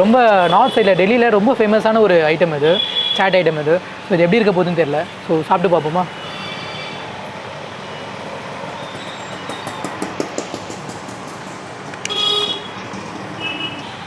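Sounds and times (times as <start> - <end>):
street traffic: 0.0 - 14.0
vehicle horn honking: 12.0 - 12.8.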